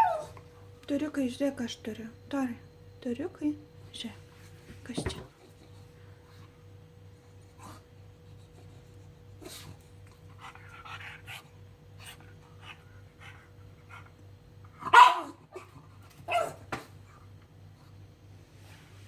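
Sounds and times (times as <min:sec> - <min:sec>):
dog barking: 0:00.0 - 0:00.3, 0:14.8 - 0:15.4, 0:16.3 - 0:16.6
dog panting: 0:07.4 - 0:14.2.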